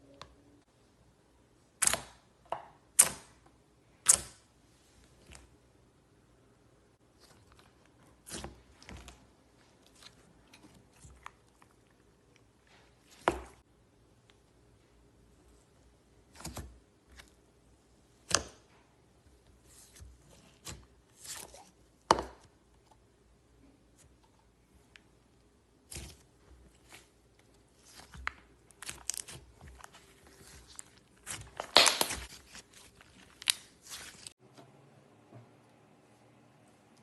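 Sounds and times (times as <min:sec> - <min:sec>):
slime popping and crackling: 0:30.4 - 0:32.6.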